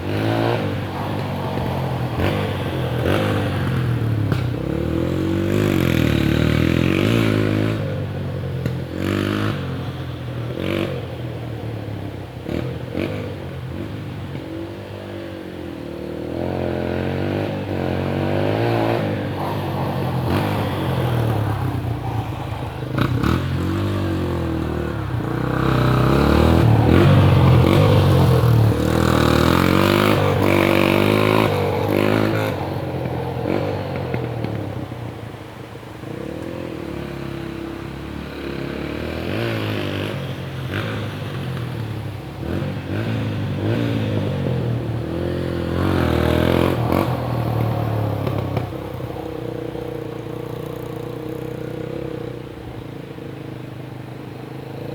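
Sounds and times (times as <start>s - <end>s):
dirt bike engine revving: 16.6s - 33.8s, 42.4s - 48.8s.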